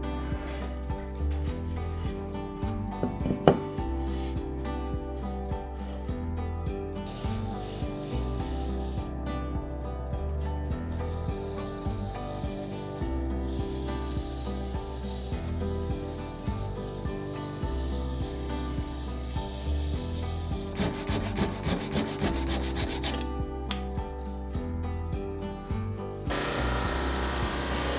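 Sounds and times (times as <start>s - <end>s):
wood scraping on spinning lathe: 11.6s - 23.3s, 26.3s - 27.9s.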